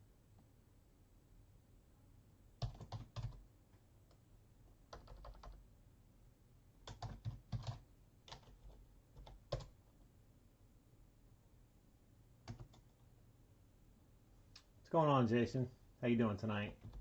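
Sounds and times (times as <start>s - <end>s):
typing on computer keyboard: 2.6s - 3.4s, 4.9s - 5.6s, 6.8s - 9.8s, 12.4s - 13.0s, 16.7s - 17.0s.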